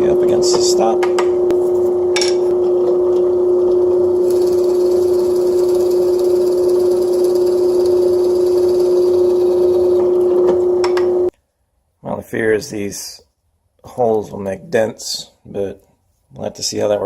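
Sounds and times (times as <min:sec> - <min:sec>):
drill press motor whining: 0:04.0 - 0:11.3.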